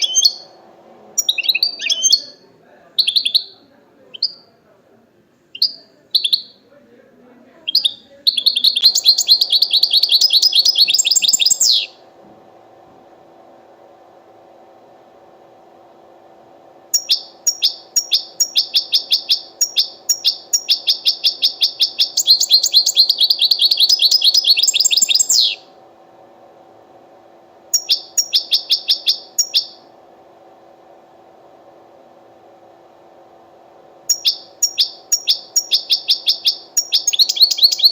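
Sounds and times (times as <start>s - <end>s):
steady low hum: 0.0s - 37.9s
goldfinch twittering: 7.8s - 11.9s, 17.0s - 25.6s, 34.1s - 37.9s.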